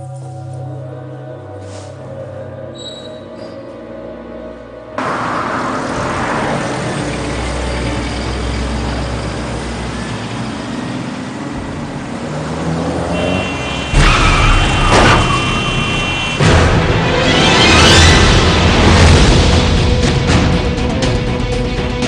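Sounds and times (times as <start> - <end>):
road noise: 3.5 - 22.0
vehicle engine rumble: 4.9 - 17.2.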